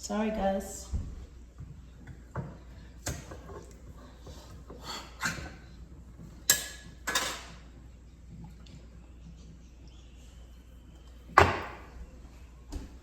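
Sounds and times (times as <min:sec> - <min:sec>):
dishes and utensils clinking: 0:06.4 - 0:07.8.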